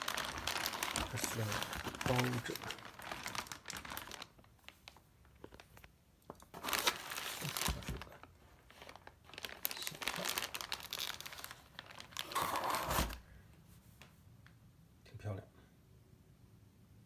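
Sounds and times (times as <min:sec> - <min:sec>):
wrapping crinkling: 0:00.0 - 0:13.3.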